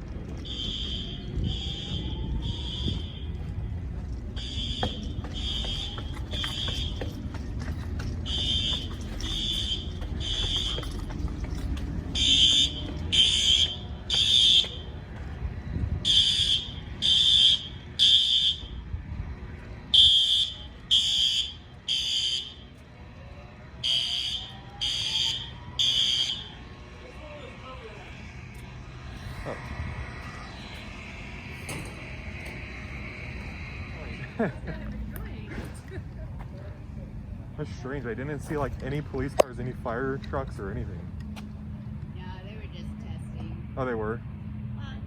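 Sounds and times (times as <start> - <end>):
fire alarm beeping: 0.3 - 19.0, 19.6 - 22.8, 23.7 - 27.0, 27.9 - 34.7
faint whooping alarm tone: 0.4 - 7.2, 8.2 - 18.9, 19.5 - 34.9.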